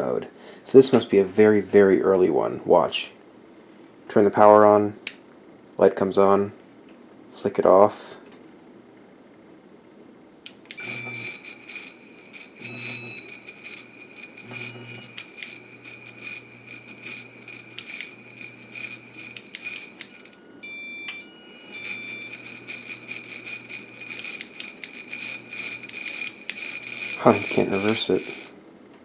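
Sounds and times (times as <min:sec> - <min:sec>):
steady high whine: 0:10.4 - 0:29.0
scattered clicks: 0:10.5 - 0:14.4, 0:15.0 - 0:16.4, 0:17.0 - 0:20.2, 0:22.3 - 0:28.5
stepped electronic tones: 0:10.7 - 0:15.4, 0:19.4 - 0:28.5
control board beeping: 0:12.6 - 0:13.4, 0:14.5 - 0:15.4, 0:19.4 - 0:22.5.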